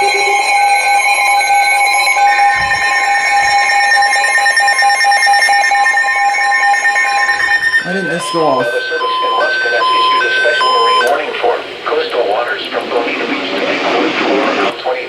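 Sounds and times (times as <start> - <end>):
steady electronic alarm tones: 0.0 - 15.0
short electronic beeps: 7.0 - 11.2.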